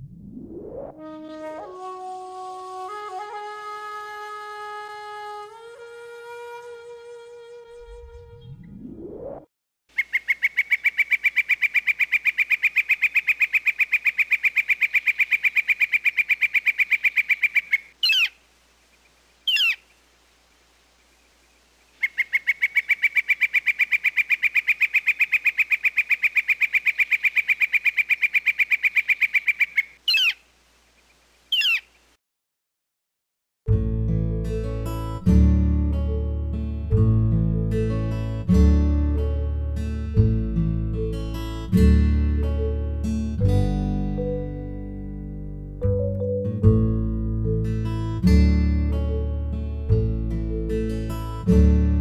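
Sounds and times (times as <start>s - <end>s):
rising swoop: 0.0s - 1.5s, 7.7s - 9.5s
bird long call: 9.9s - 18.4s, 19.4s - 20.0s, 21.2s - 30.4s, 31.5s - 32.0s
short falling bird calls: 9.9s - 20.1s, 20.9s - 32.2s.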